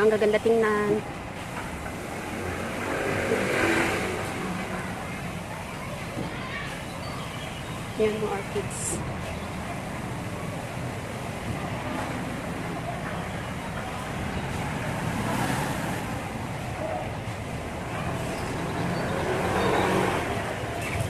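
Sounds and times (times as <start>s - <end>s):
road traffic rushing: 0.0s - 21.0s.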